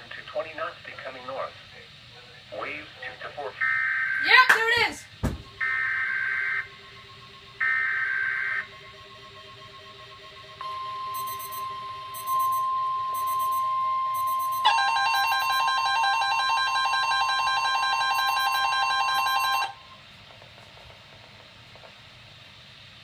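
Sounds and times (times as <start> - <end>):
rapidly pulsing alarm beep: 3.6 - 20.0
steady high alert tone: 5.5 - 19.9.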